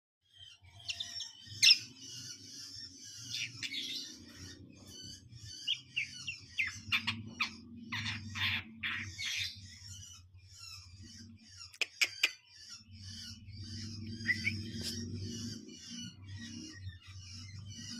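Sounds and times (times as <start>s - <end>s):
bird chattering and whistling: 0.5s - 17.9s
low steady hum: 12.7s - 17.9s.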